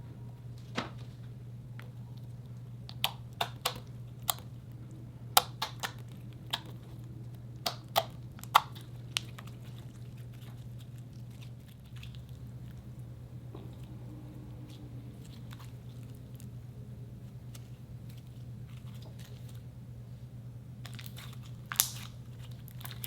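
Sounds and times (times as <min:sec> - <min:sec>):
steady low hum: 0:00.0 - 0:23.0
slime squishing and popping: 0:02.8 - 0:04.5, 0:05.3 - 0:07.0, 0:07.6 - 0:12.9, 0:20.8 - 0:23.0.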